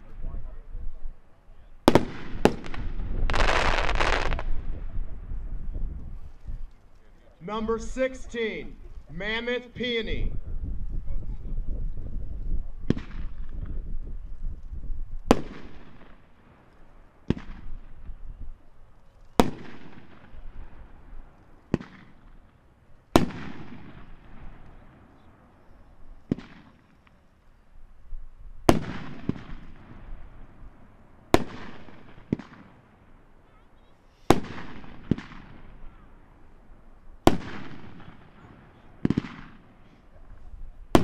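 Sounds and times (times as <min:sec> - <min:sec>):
fireworks shells bursting with booms: 0:01.8 - 0:06.9, 0:12.8 - 0:14.2, 0:14.8 - 0:18.3, 0:19.2 - 0:27.2, 0:28.6 - 0:33.3, 0:34.1 - 0:41.0.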